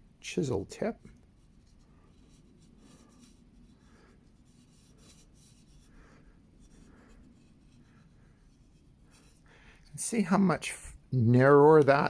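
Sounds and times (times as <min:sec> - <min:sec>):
marker pen rubbing on steel: 0:01.4 - 0:09.5.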